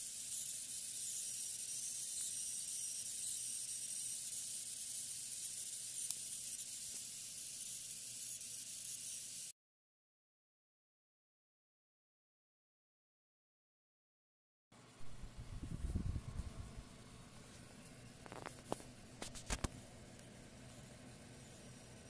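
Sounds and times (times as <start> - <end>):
high-pitched coil whine: 0.0 - 9.5
faint low hum: 14.8 - 22.0.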